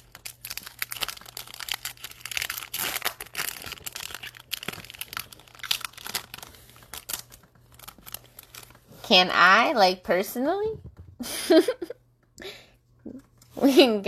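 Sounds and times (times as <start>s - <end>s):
foil wrapper crackling: 0.0s - 8.9s.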